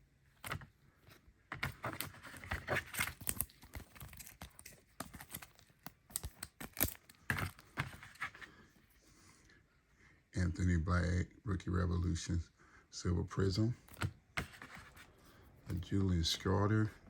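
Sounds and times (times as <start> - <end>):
cards rustling and crinkling: 0.2 - 9.0, 13.8 - 16.9.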